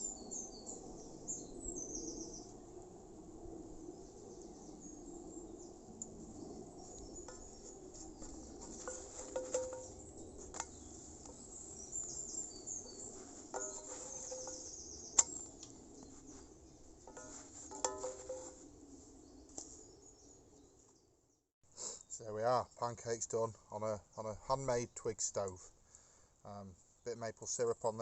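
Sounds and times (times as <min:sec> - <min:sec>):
utensils clinking on a pan: 0:08.8 - 0:10.0, 0:13.5 - 0:15.4, 0:17.1 - 0:18.6
high chirping: 0:08.8 - 0:16.3.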